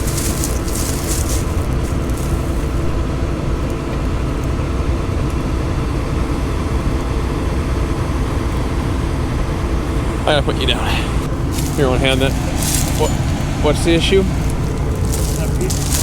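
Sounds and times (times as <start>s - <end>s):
scratchy rustling: 0.0s - 2.9s, 11.3s - 16.0s
large diesel engine running: 0.0s - 16.0s.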